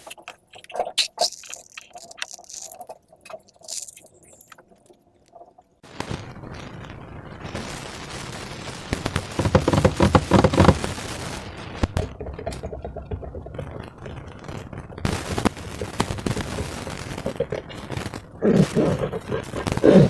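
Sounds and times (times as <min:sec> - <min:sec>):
slime squishing with wet crackles: 0:00.0 - 0:05.8.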